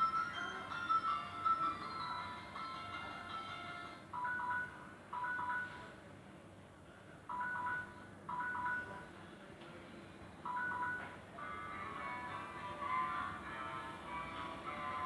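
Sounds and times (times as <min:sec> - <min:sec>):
electronic phone ringtone: 0:00.0 - 0:05.9, 0:07.3 - 0:09.0, 0:10.5 - 0:12.3.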